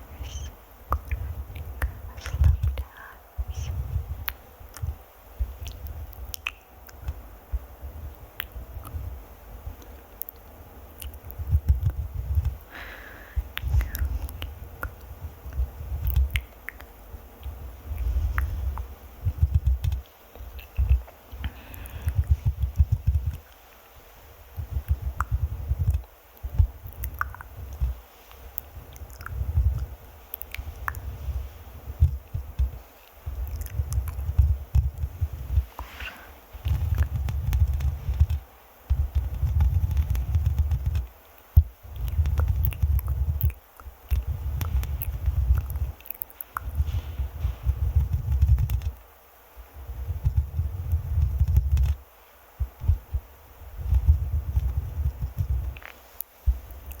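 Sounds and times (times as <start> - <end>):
fingers rubbing on microphone: 0.0 - 7.2, 13.6 - 23.6, 24.2 - 49.0, 49.8 - 52.0, 52.6 - 57.0
fingers scratching a microphone: 18.0 - 21.1, 32.0 - 43.6, 46.6 - 49.0, 50.1 - 52.0.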